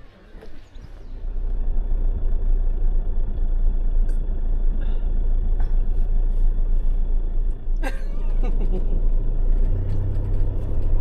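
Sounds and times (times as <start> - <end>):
engine and road rumble: 0.0 - 11.0.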